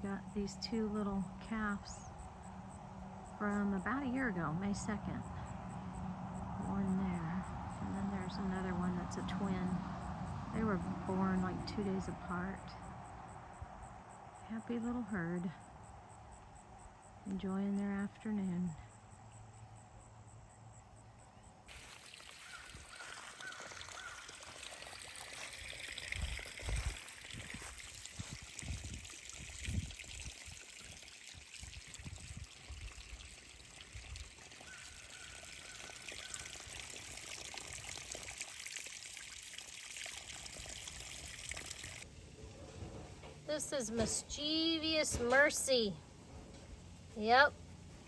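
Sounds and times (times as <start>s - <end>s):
water splashing and trickling: 21.7s - 42.1s.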